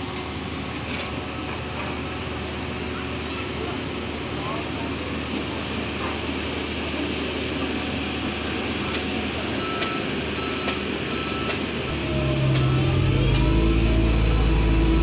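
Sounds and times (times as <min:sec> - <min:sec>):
heavy diesel engine running: 0:00.0 - 0:15.0
reversing beeper: 0:09.6 - 0:15.0.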